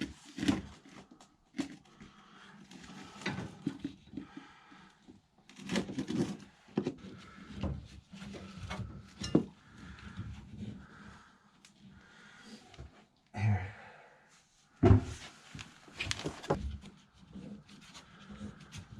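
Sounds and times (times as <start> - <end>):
tools and pipe fittings clattering: 5.6 - 10.5.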